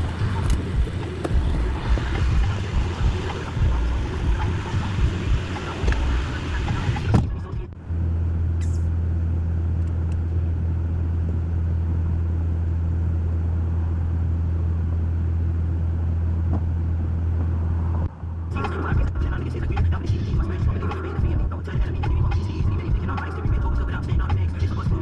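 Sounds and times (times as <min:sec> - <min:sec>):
rough wind-like noise: 0:00.0 - 0:07.7
vehicle engine idling: 0:00.0 - 0:25.0.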